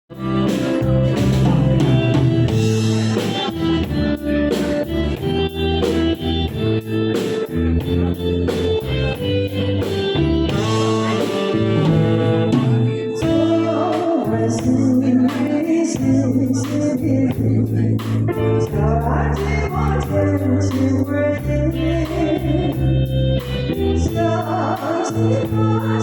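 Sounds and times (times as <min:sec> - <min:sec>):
guitar: 0:00.1 - 0:26.0
pop ballad backing track: 0:00.1 - 0:26.0
steady drum beat: 0:00.1 - 0:26.0.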